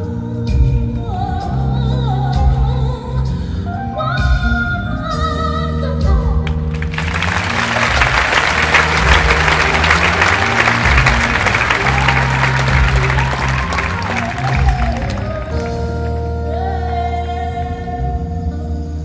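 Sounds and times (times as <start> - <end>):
show music with singing: 0.0 - 19.0
audience applauding: 6.5 - 16.1.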